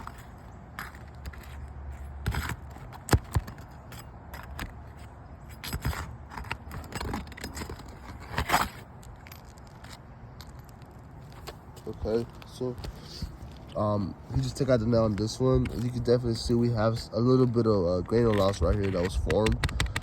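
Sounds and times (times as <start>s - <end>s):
metal tool scraping shingles: 0.0s - 8.9s.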